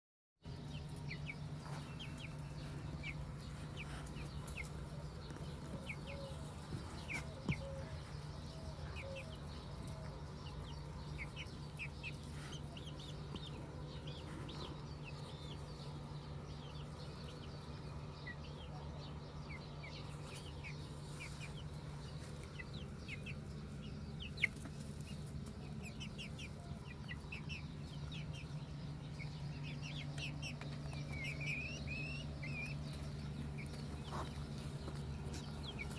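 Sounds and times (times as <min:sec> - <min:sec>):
chickens clucking: 0:00.5 - 0:35.9
steady low hum: 0:00.5 - 0:35.9.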